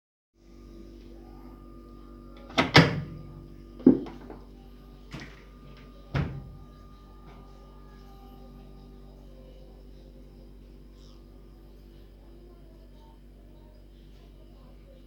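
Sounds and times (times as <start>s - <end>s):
steady low hum: 0.4s - 15.0s
washing machine lid clacking: 2.5s - 3.2s, 3.8s - 4.4s.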